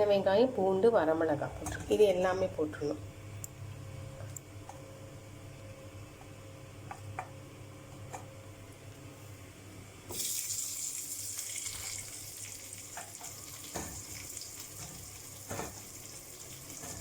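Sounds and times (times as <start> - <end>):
onions sizzling in hot fat: 10.1 - 17.0.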